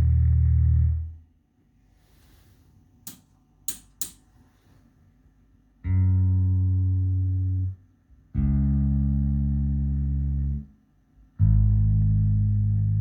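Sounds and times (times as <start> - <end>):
low plucked bass guitar notes: 0.0 - 1.2, 5.8 - 7.8, 8.4 - 10.7, 11.4 - 13.0.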